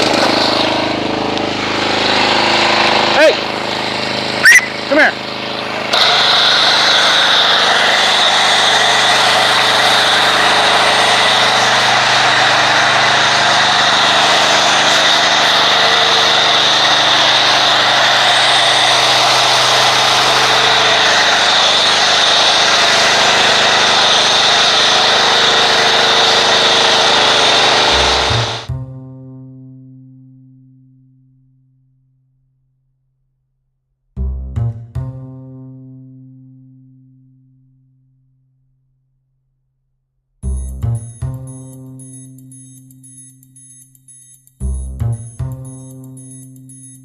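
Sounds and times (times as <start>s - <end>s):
pressure washer motor humming: 0.0s - 28.7s, 44.6s - 47.0s
hissing water spray: 0.1s - 28.7s.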